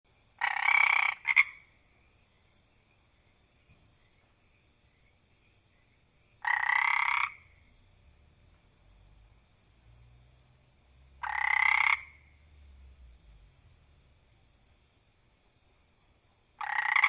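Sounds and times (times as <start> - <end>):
frog croaking: 0.4 - 2.0, 6.4 - 7.8, 9.3 - 14.0, 16.6 - 17.0.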